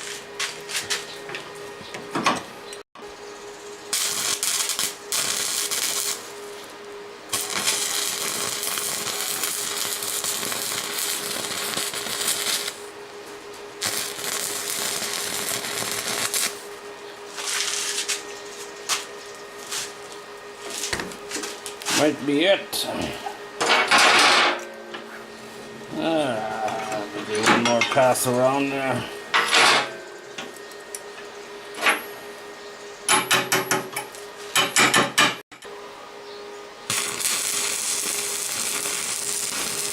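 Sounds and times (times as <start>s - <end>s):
welding arc crackling and hissing: 0.0s - 1.0s, 3.5s - 23.2s, 36.8s - 39.9s
steady hum: 0.0s - 39.9s.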